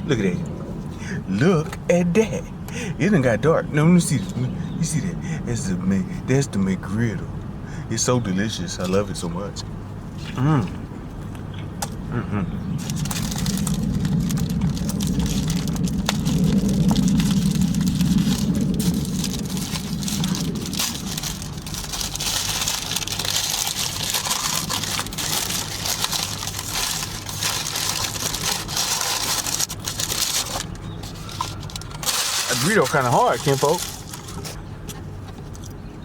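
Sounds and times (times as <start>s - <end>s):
chewing and smacking food: 12.9s - 32.0s, 33.4s - 35.9s.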